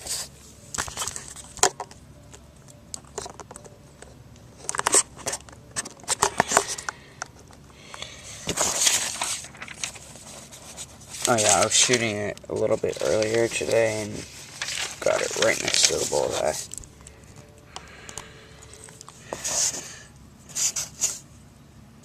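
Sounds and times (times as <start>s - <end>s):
paper and cardboard rustling: 8.4s - 16.8s, 18.7s - 21.2s.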